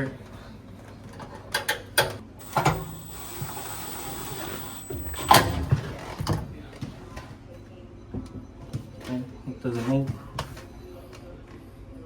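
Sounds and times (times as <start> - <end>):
steady hiss: 2.4 - 5.6.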